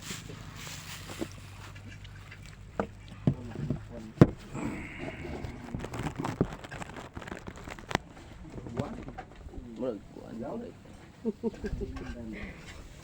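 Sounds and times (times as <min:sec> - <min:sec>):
faint background voices: 0:00.1 - 0:06.7, 0:08.0 - 0:13.0.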